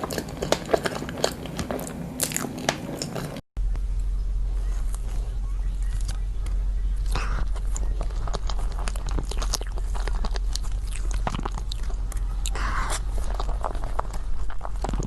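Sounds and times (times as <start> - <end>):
steady low hum: 0.0 - 15.0
chewing mouth clicks and smacks: 7.5 - 15.0.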